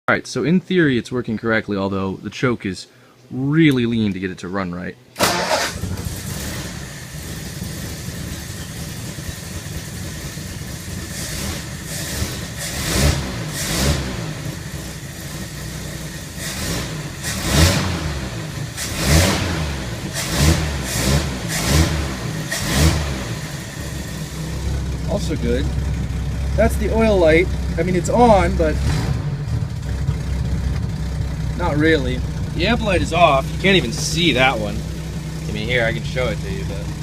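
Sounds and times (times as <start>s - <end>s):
engine revving roughly: 5.2s - 25.9s, 26.5s - 37.0s.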